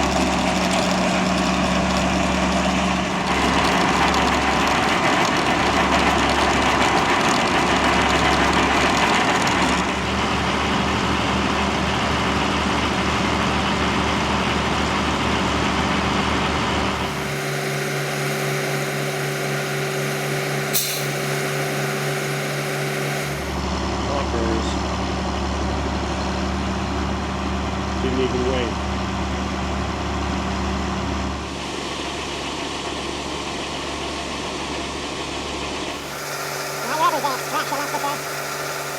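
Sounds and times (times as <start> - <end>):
heavy vehicle engine running: 0.0 - 38.9
short sharp hiss: 20.7 - 22.1.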